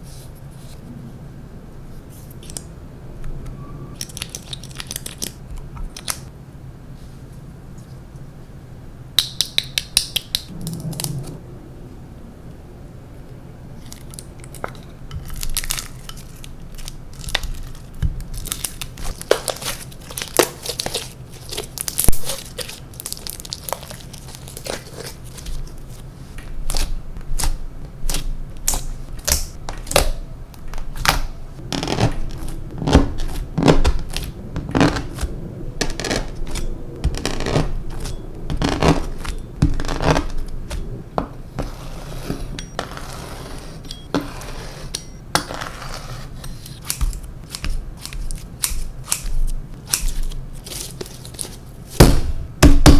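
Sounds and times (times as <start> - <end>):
slime popping and crackling: 13.8 - 25.8, 26.7 - 41.0.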